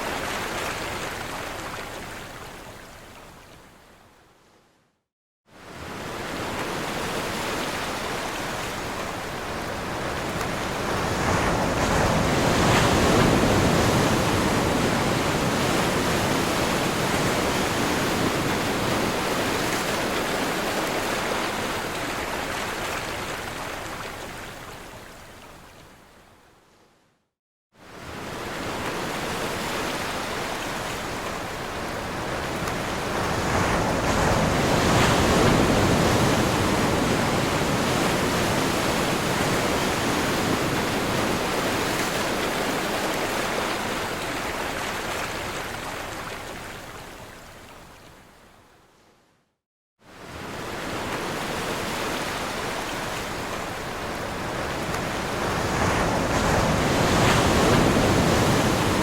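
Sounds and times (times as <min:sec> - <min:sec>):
ocean surf breaking on shore: 0:05.6 - 0:23.8, 0:27.9 - 0:46.6, 0:50.1 - 0:59.0.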